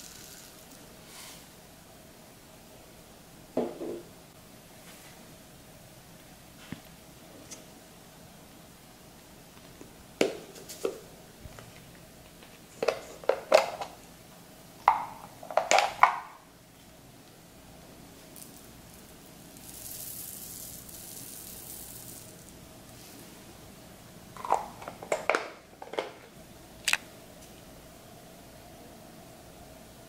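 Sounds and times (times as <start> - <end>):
soft hiss: 0.0 - 13.2, 16.4 - 24.4.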